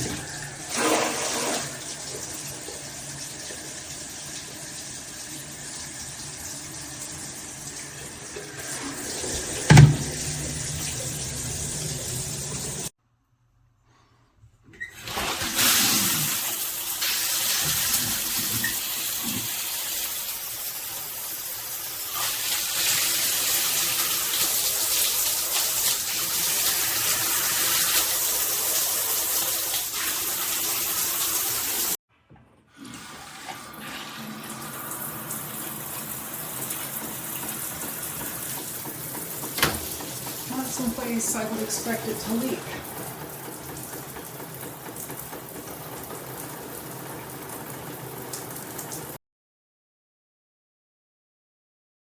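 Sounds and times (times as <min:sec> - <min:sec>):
shower head spraying water: 0:08.9 - 0:12.9, 0:34.8 - 0:49.0.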